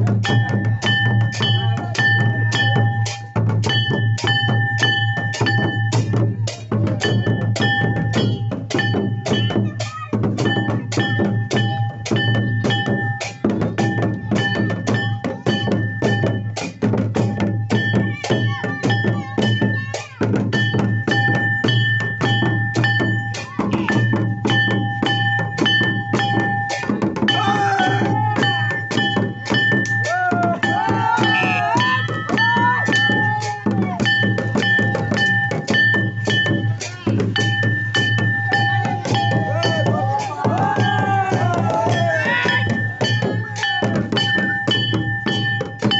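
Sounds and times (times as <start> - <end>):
drums beating fast rhythm: 0.0 - 45.9
held high notes: 17.2 - 45.9
wavering melody line: 17.2 - 45.9.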